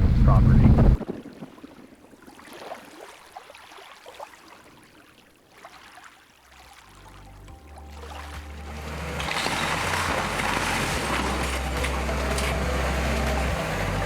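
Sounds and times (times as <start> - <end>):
low steady hum: 0.0 - 1.0.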